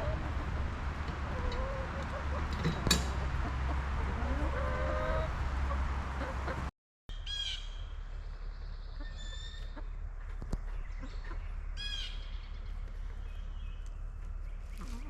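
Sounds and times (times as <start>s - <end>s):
steady low rumble: 0.0s - 6.7s
harsh bird calls: 10.6s - 15.0s.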